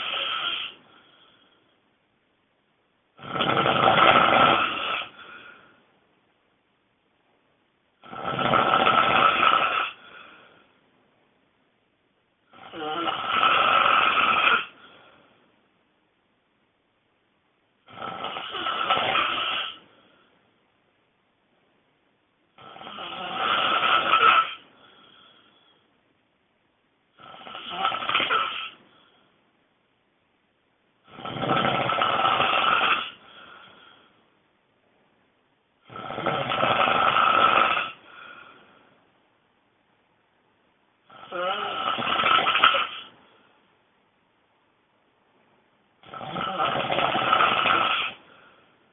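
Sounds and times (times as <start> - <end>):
person snoring loudly: 0.0 - 0.8, 3.2 - 5.6, 8.0 - 10.3, 12.5 - 14.8, 17.9 - 19.8, 22.6 - 24.6, 27.2 - 28.8, 31.1 - 33.9, 35.8 - 38.6, 41.1 - 43.1, 46.0 - 48.4.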